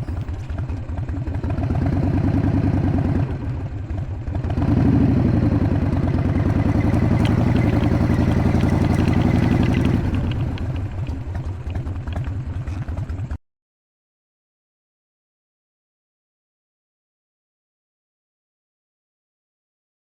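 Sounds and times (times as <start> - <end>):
motorcycle engine running: 0.0 - 13.4.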